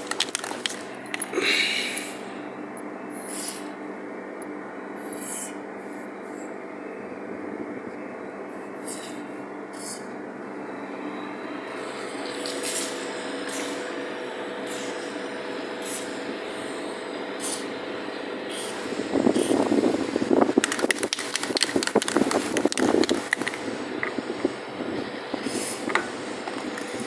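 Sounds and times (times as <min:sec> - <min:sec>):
steady machine hum: 0:00.0 - 0:27.0.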